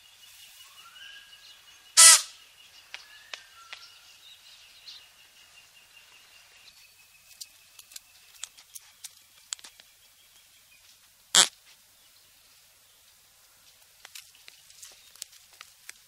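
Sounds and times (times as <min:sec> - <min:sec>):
animal call: 0:02.0 - 0:02.4.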